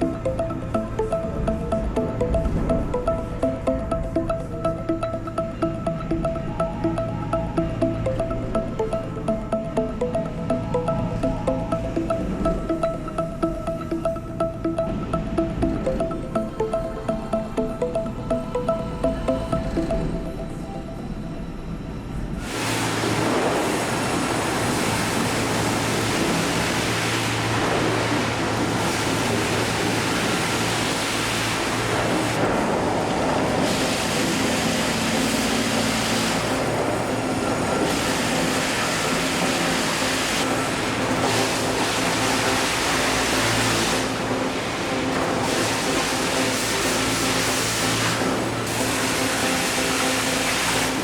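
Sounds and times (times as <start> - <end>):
low machinery hum: 0.0 - 51.0
sawmill machinery rushing: 22.4 - 51.0.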